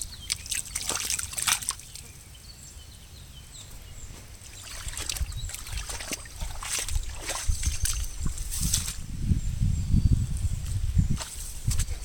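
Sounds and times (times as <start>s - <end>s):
boots splashing in floodwater: 0.2s - 2.1s, 4.4s - 8.9s.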